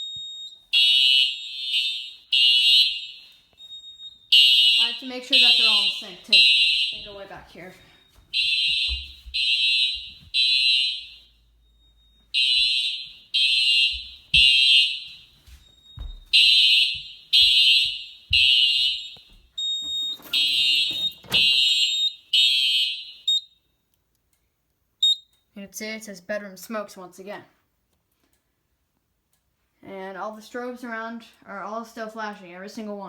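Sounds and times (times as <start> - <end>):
fire alarm beeping: 0.0 - 23.8, 25.0 - 25.4.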